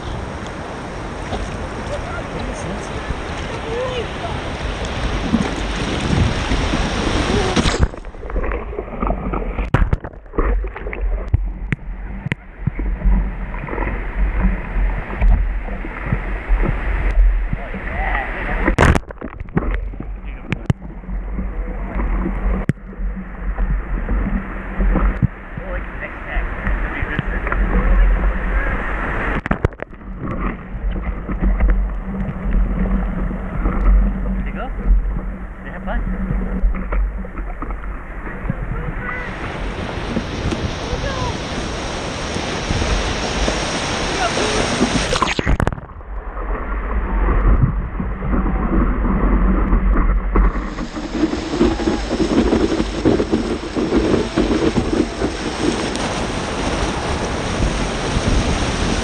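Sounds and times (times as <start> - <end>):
low rumble: 0.0 - 59.0
ocean surf: 0.0 - 59.0
water gurgling and splashing: 0.0 - 59.0
wind: 0.0 - 59.0
sharp knocks or crackles: 7.6 - 15.4, 18.6 - 21.5, 29.3 - 33.0.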